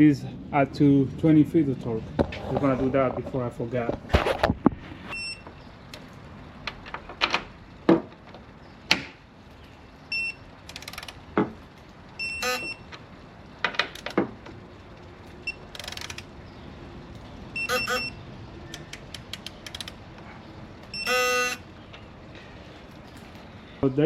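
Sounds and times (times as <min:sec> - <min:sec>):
metal clicks and knocks: 0:13.6 - 0:14.6
short high beeps: 0:17.6 - 0:18.2, 0:20.9 - 0:21.6.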